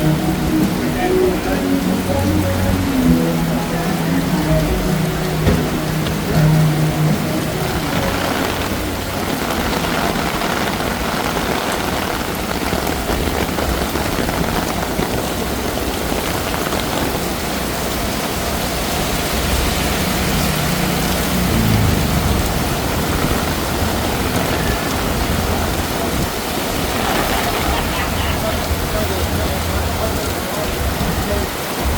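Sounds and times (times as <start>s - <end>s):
heavy rain pouring: 0.0s - 31.9s.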